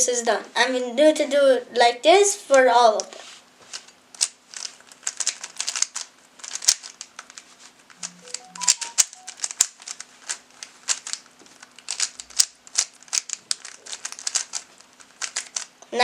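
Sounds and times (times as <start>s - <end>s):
puzzle cube clicking as turned: 3.7s - 15.7s.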